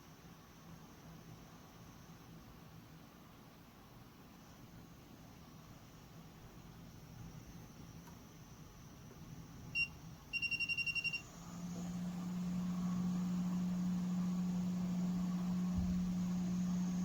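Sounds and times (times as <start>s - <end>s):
electronic beeps: 9.8s - 11.2s
blower humming: 10.4s - 17.0s.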